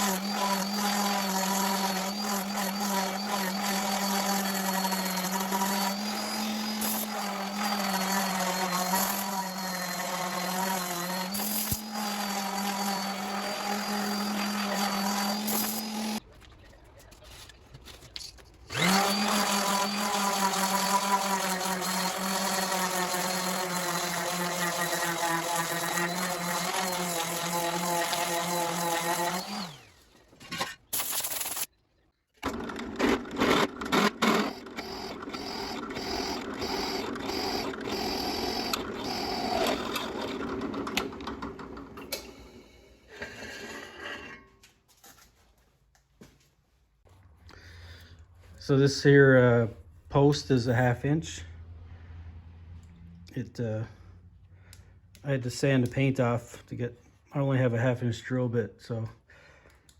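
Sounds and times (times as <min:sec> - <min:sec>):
power tool motor running: 0:00.0 - 0:16.2, 0:18.7 - 0:31.7, 0:32.4 - 0:41.4.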